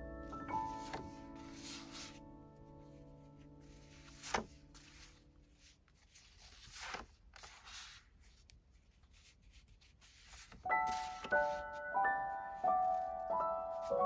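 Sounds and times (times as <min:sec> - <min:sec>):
piano music: 0:00.0 - 0:05.8, 0:10.6 - 0:14.0
soft rustling and swishing: 0:00.7 - 0:12.0.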